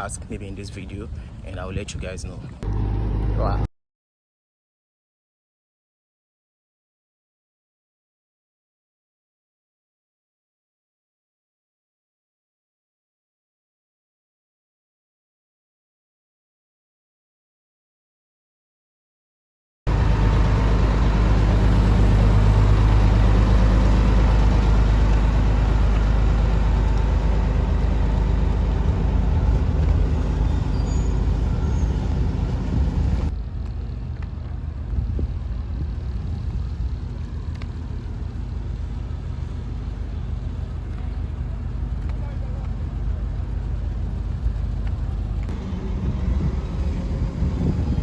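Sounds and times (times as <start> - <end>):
heavy vehicles rumbling: 0.0 - 3.7, 19.9 - 48.0.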